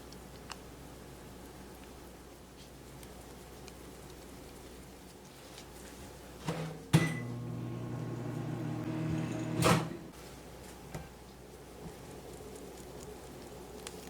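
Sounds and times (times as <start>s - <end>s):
clunk: 6.5s - 7.4s
steady electric hum: 6.5s - 10.2s.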